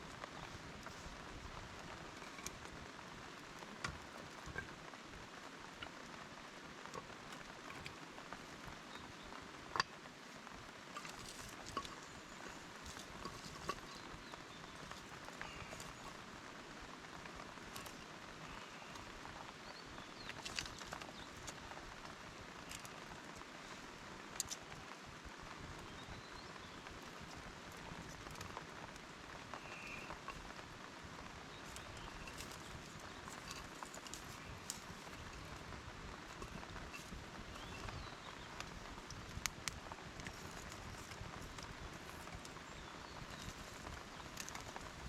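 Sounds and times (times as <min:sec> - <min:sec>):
rain patter: 0:00.0 - 0:45.0
ticks and drips: 0:00.0 - 0:45.0.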